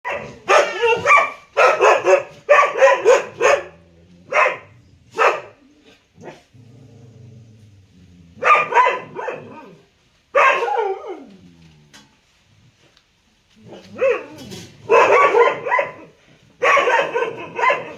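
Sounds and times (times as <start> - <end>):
dog barking: 0.0 - 5.6, 8.4 - 11.2, 13.7 - 17.9.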